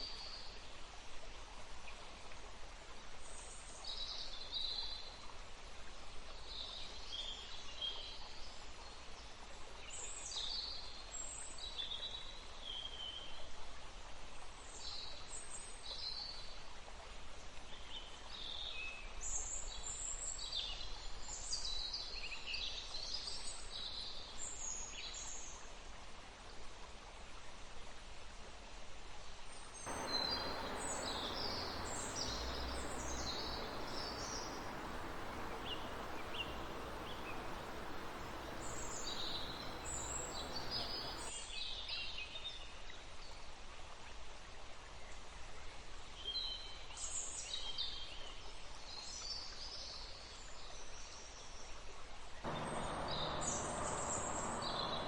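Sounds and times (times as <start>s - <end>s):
birds chirping: 29.9s - 41.3s, 52.5s - 55.0s
river rushing: 29.9s - 41.3s, 52.5s - 55.0s.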